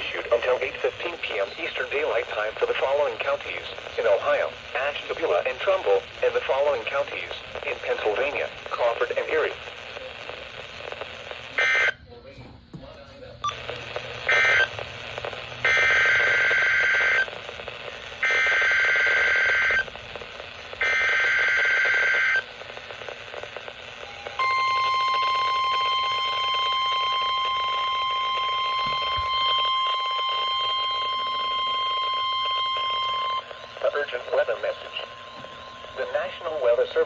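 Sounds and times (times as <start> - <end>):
piercing alarm tone: 24.0 - 37.0.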